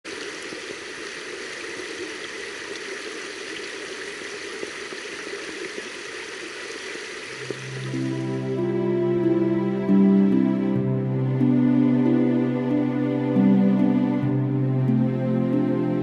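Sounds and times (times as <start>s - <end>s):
running water: 0.0s - 16.0s
music: 7.6s - 16.0s.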